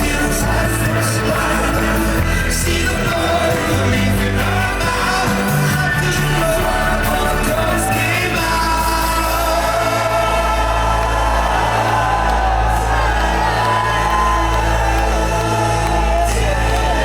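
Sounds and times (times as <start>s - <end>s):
male lead vocal: 0.0s - 17.0s
crowd shouting: 6.4s - 17.0s.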